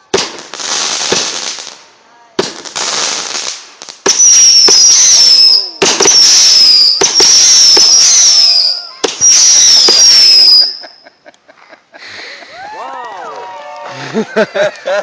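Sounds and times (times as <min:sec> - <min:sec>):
fireworks whistling shots: 0:00.0 - 0:01.8, 0:02.4 - 0:11.1
firework cracks: 0:00.0 - 0:11.0.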